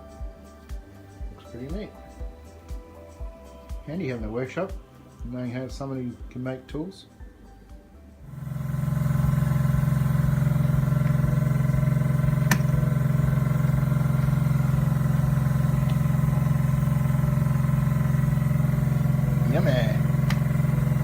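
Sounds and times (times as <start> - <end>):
machine humming: 8.2 - 21.0.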